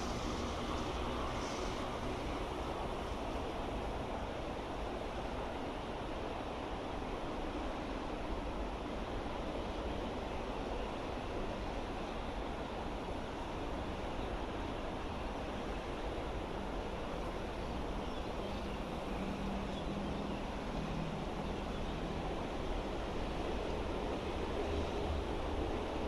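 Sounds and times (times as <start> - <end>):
steady rushing noise: 0.0 - 6.2.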